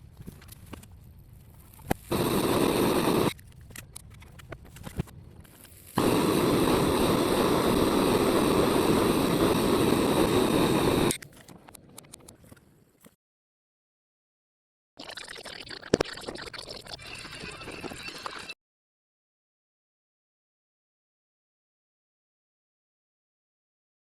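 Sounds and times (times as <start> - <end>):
gas burner flame hissing: 1.9 - 3.3, 5.8 - 11.2.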